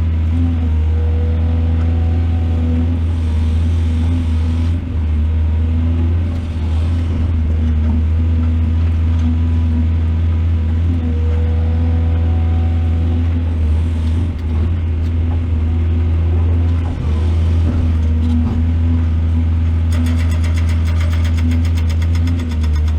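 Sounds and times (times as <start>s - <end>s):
heavy machine engine humming: 0.0s - 22.9s
fast regular clatter: 19.8s - 22.9s.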